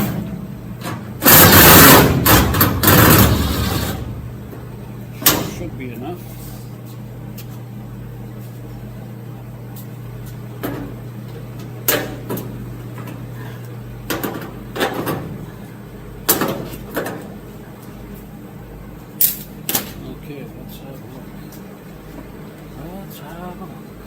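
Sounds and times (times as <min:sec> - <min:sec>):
steady hum: 0:00.0 - 0:24.0.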